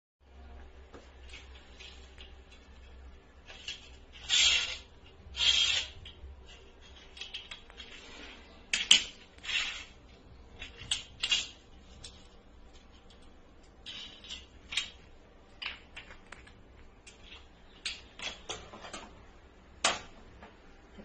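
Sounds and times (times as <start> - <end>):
scraping rustles: 1.0 - 16.5.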